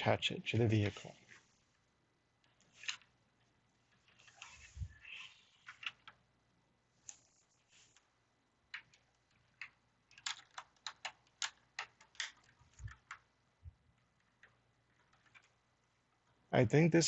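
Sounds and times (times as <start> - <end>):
plastic bricks clicking: 8.0 - 13.3, 13.9 - 16.4.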